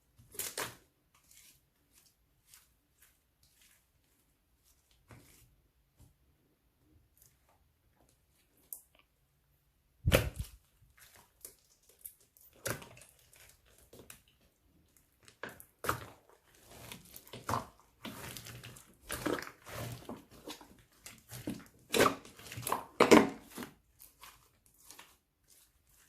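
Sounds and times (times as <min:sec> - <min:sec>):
slime squelching and popping: 0:10.0 - 0:26.0.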